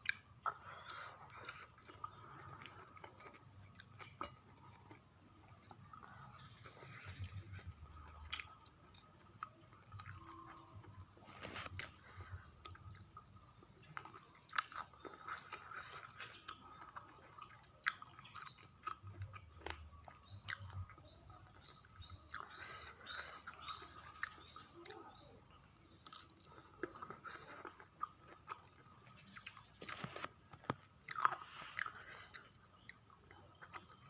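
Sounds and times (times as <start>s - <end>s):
small crunches: 11.2s - 12.4s, 26.1s - 32.5s
person chewing and biting: 13.9s - 21.0s, 26.0s - 34.0s.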